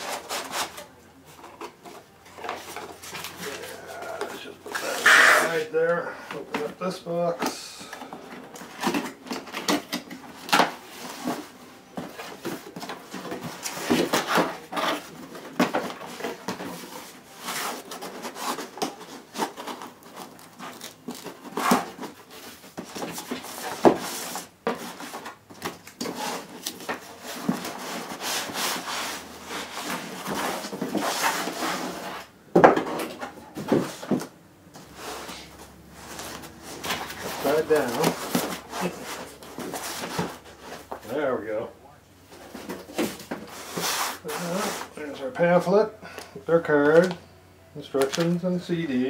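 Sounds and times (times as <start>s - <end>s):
cardboard box rustling and scraping: 26.0s - 34.2s, 34.8s - 41.0s.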